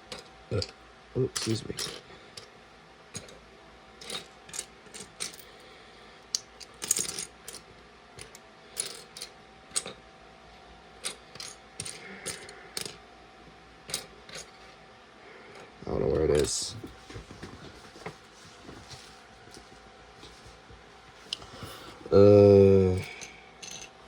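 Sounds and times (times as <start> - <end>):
plastic pieces clattering: 23.0 - 23.9.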